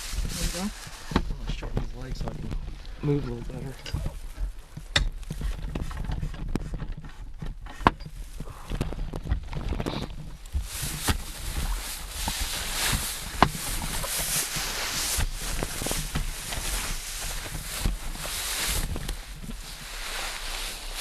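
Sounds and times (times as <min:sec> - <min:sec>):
footsteps through dry leaves: 0:00.0 - 0:01.2, 0:10.5 - 0:21.0.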